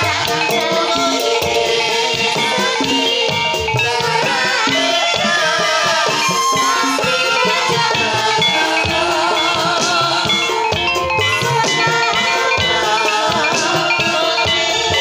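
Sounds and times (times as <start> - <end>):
metallophones ringing a melody: 0.0 - 15.0
wavering melody line: 0.0 - 15.0.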